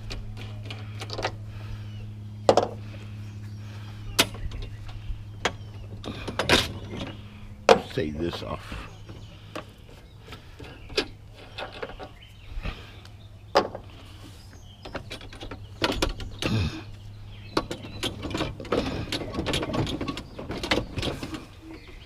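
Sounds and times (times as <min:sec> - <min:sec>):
knocks clicks and rattles: 0:00.0 - 0:01.4, 0:04.2 - 0:12.2, 0:14.8 - 0:22.0
steady low hum: 0:00.0 - 0:22.0.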